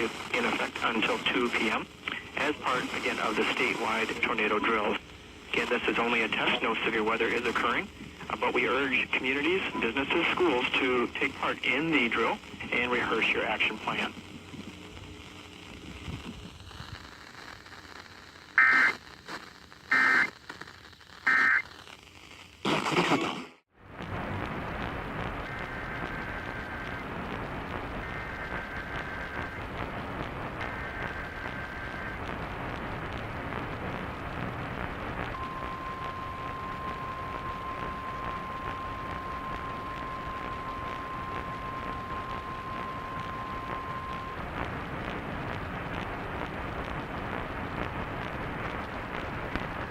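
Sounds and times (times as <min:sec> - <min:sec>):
radio static: 0:00.0 - 0:49.9
burst of noise: 0:13.9 - 0:49.9
warbling data tones: 0:21.3 - 0:21.7, 0:35.1 - 0:46.6.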